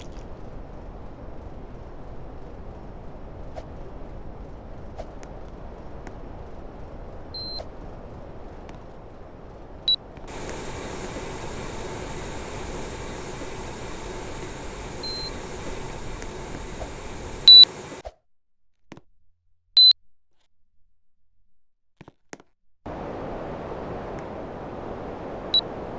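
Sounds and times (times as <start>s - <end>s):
air conditioner airflow rushing: 10.3s - 18.0s
air conditioner beeping: 10.3s - 18.0s.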